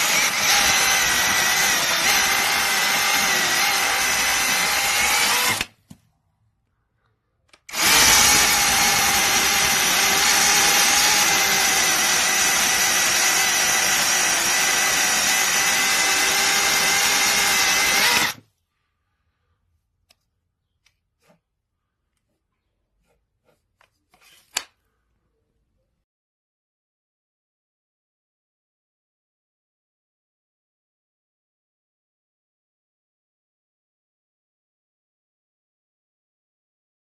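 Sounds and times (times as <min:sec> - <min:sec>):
mini chainsaw whining: 0:00.0 - 0:05.7, 0:07.7 - 0:18.4.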